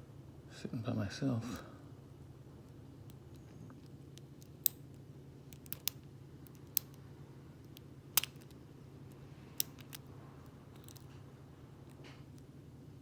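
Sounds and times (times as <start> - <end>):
padlock pick clicking: 3.8 - 4.9, 5.5 - 7.0, 7.6 - 8.6, 9.6 - 10.0, 10.8 - 11.1.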